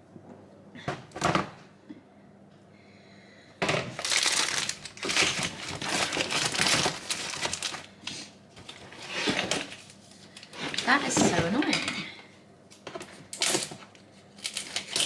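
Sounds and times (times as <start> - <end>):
wrapping crinkling: 4.0 - 11.7, 13.3 - 15.0.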